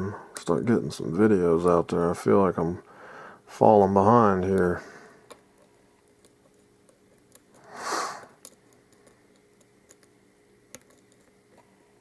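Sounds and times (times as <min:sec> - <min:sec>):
breathy rush of noise: 0:07.6 - 0:08.4.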